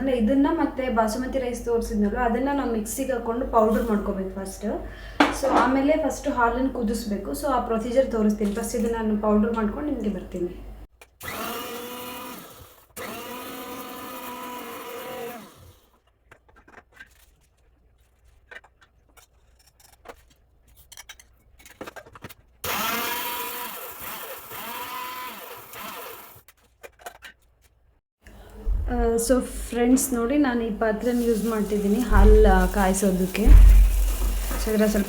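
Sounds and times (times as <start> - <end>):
mixer grinder motor whining: 11.2 - 15.9, 22.6 - 26.4, 31.0 - 35.0.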